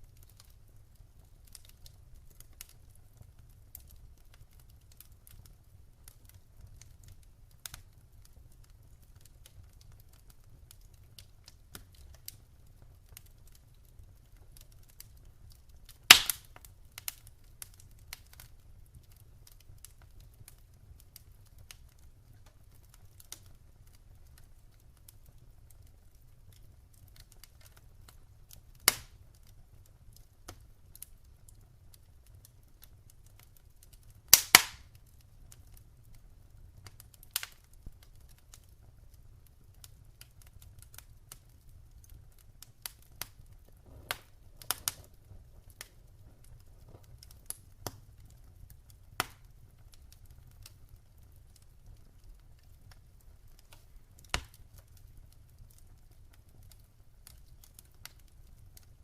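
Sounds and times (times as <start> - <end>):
wood fire crackling: 0.0 - 59.0
loud fire pops: 15.9 - 18.4, 28.7 - 29.2, 34.2 - 35.1, 42.6 - 48.4, 49.1 - 50.8, 53.5 - 55.0.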